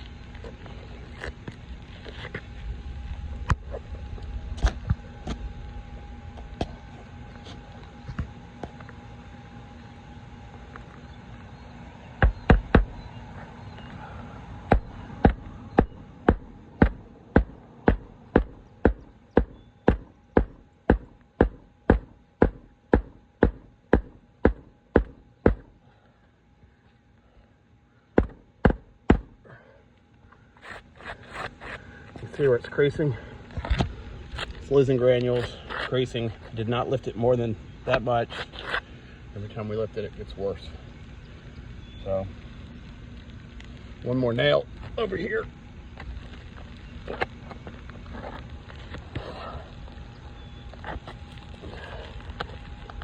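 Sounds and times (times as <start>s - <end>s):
hammer striking nails: 14.7s - 25.7s, 28.2s - 29.4s.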